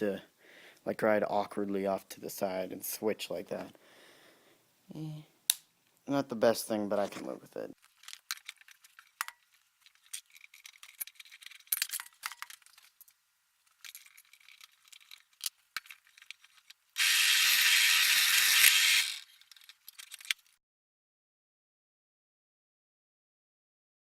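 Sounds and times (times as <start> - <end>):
metal tools clinking and rattling: 7.8 - 13.1, 13.7 - 16.8, 19.4 - 20.5.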